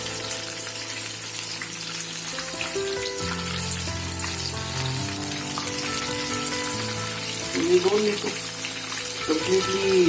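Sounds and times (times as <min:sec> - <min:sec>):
chicken deep-frying in oil: 0:00.0 - 0:10.0.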